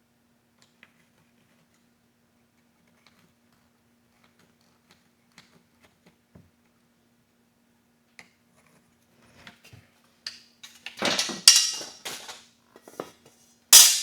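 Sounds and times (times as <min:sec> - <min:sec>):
metal tools clinking and rattling: 0:10.6 - 0:12.4, 0:13.8 - 0:14.0.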